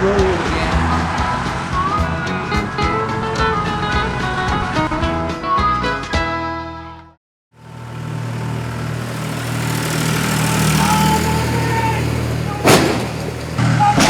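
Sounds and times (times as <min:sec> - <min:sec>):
car engine running: 0:00.0 - 0:05.2, 0:07.6 - 0:14.0
music: 0:00.0 - 0:07.2
high squeal: 0:07.8 - 0:14.0.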